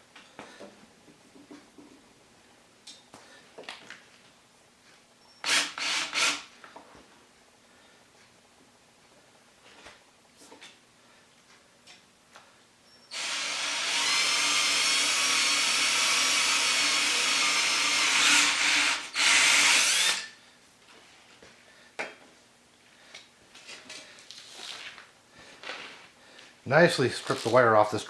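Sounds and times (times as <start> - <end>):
electric drill running: 5.4 - 6.5, 13.1 - 20.4.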